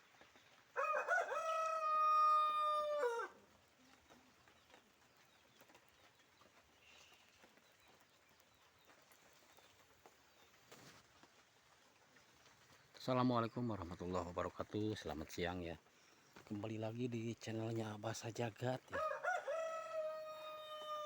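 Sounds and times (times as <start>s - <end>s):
rooster crowing: 0.8s - 3.4s, 19.0s - 21.0s.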